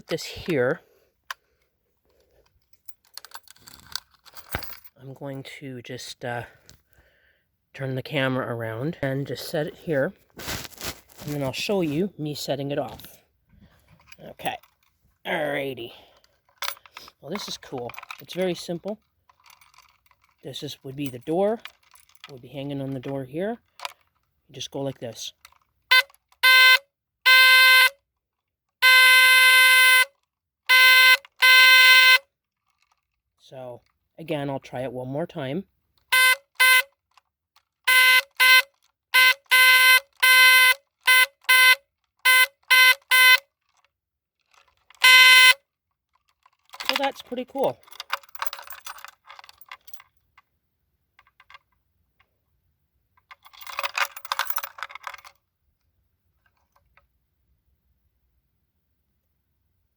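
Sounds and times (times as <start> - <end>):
metal chain clinking and rattling: 2.6 - 5.0, 16.1 - 24.3, 46.4 - 50.4, 53.2 - 55.4
burglar alarm buzzing: 25.9 - 28.0, 28.8 - 30.1, 30.7 - 32.2, 36.1 - 36.9, 37.9 - 43.4, 45.0 - 45.6.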